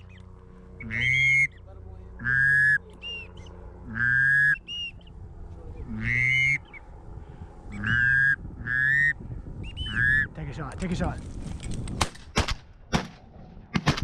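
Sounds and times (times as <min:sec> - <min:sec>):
duck call blown: 0:00.8 - 0:01.6, 0:02.2 - 0:03.2, 0:03.9 - 0:04.9, 0:05.9 - 0:06.8, 0:07.7 - 0:09.2.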